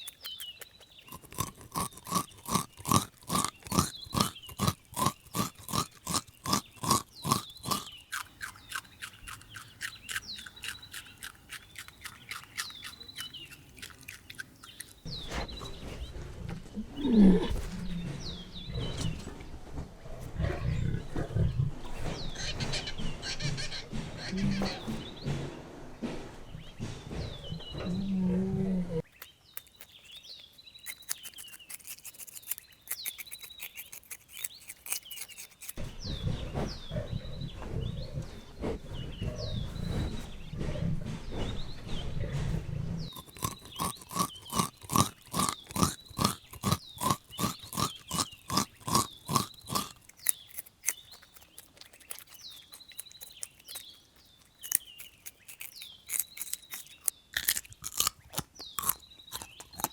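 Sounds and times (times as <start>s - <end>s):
rabbits chewing and crunching: 0.0s - 59.9s
small birds chirping: 0.0s - 59.9s
low rumbling: 15.1s - 29.0s, 35.8s - 47.2s.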